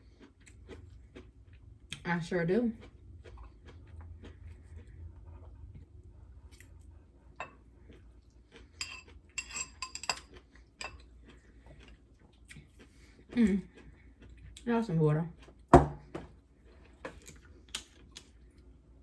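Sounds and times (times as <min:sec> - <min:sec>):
faint low hum: 0:00.0 - 0:19.0
cutlery clinking on dishes: 0:08.8 - 0:11.0.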